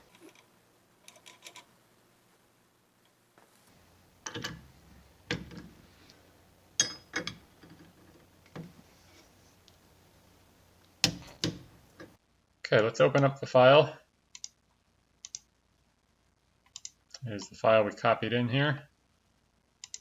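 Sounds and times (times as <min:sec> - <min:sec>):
sharp clicks and knocks: 0:10.9 - 0:12.2
faint small ticks: 0:19.8 - 0:20.0.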